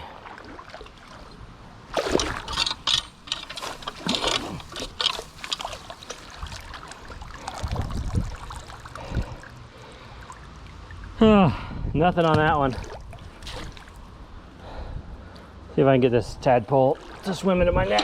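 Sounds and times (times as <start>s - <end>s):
net splashing through water: 0.2s - 9.5s, 12.5s - 14.0s
water trickling from net: 0.4s - 11.2s.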